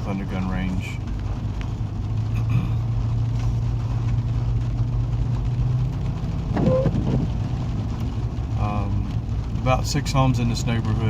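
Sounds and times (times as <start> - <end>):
car engine hum: 0.0 - 11.0
road rumble: 0.0 - 11.0.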